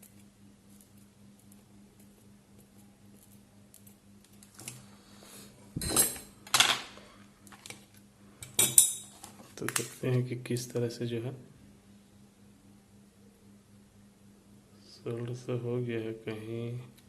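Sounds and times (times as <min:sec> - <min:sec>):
steady low hum: 0:00.0 - 0:17.0
metal tools clattering: 0:05.8 - 0:06.8.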